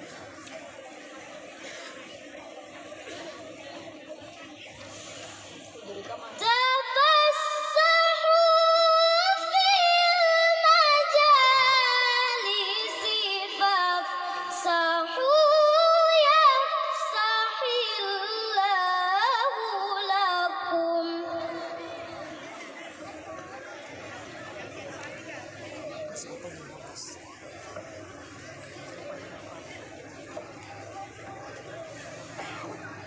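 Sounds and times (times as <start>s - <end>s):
girl reciting melodiously: 6.4s - 22.3s.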